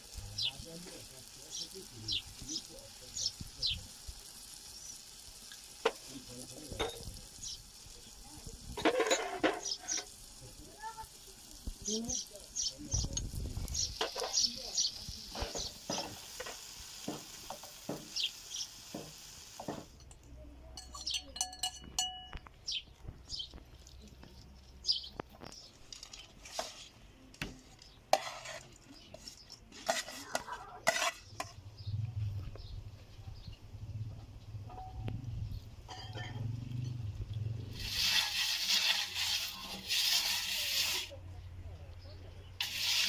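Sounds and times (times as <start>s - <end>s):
utensils clinking against pots: 5.8s - 7.2s, 8.7s - 10.2s, 15.3s - 18.1s, 19.6s - 22.5s, 35.8s - 37.1s.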